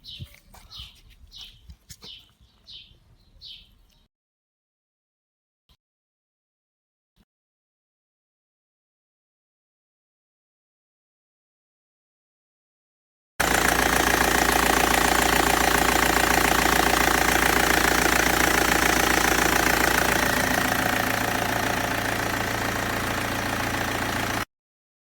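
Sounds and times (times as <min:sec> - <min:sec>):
diesel engine idling: 0:13.4 - 0:24.5.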